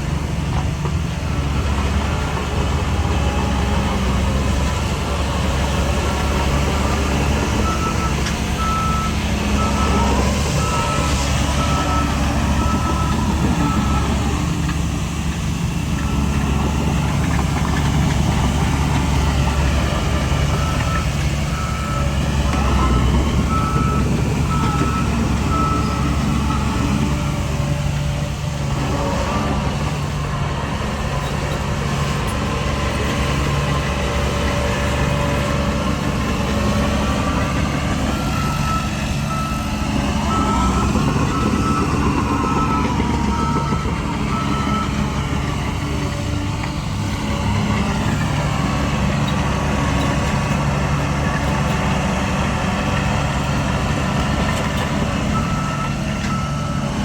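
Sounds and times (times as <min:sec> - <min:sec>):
diesel machinery engine running: 0:00.0 - 0:57.0
reversing alarm beeping: 0:05.6 - 0:14.7, 0:16.0 - 0:27.6, 0:36.2 - 0:46.1, 0:54.9 - 0:57.0.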